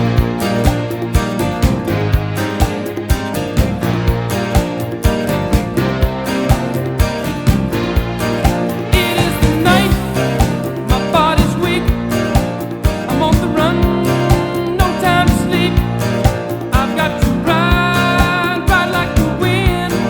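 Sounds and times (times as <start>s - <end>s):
song with sung melody over guitar: 0.0s - 20.0s.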